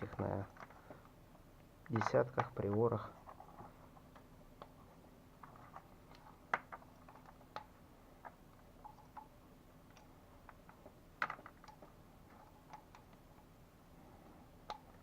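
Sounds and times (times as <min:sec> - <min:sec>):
tools clicking and tapping: 0:05.4 - 0:13.2, 0:14.6 - 0:15.0.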